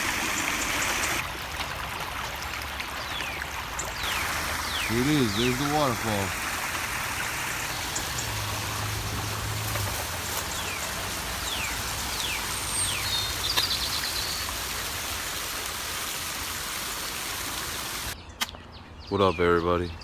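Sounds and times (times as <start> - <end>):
waterfall rushing: 0.0 - 1.2, 4.0 - 18.2.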